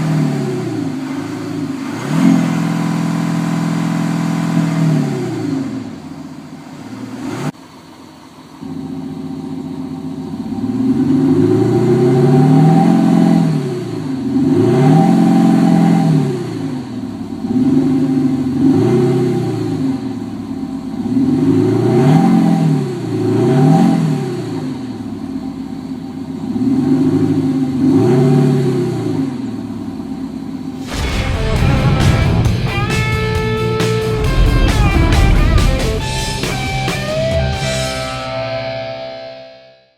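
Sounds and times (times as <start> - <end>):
car engine revving: 30.8 - 38.2.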